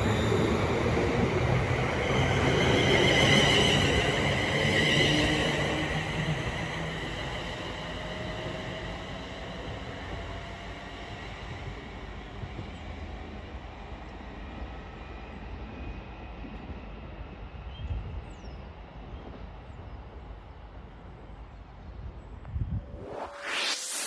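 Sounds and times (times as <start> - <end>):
train rumbling: 0.0 - 15.8
rising whoosh: 22.7 - 24.0.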